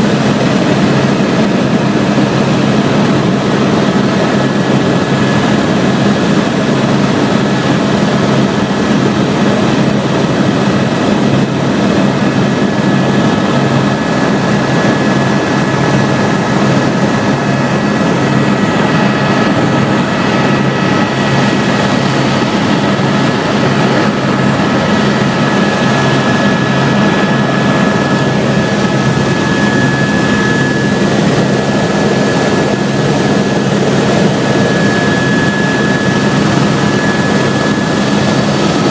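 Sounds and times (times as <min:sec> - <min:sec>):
helicopter engine and rotor drone: 0:00.0 - 0:38.9
high whine: 0:00.0 - 0:38.9.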